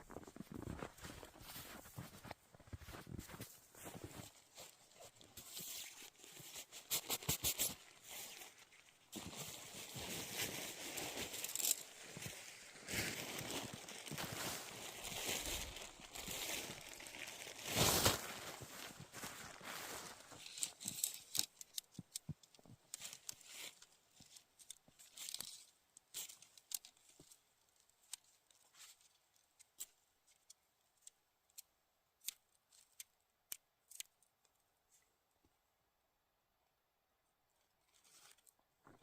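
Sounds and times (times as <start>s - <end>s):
nylon fabric rustling: 0.0s - 20.7s.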